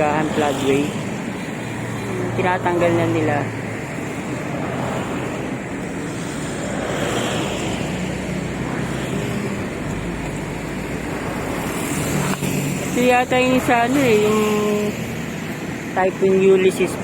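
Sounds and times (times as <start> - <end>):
road traffic noise: 0.0 - 17.0
wind rushing over microphone: 0.0 - 17.0.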